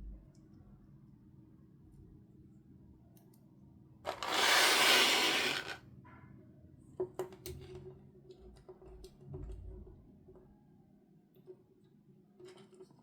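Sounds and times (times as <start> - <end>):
packaging rasping tear: 4.1 - 5.8.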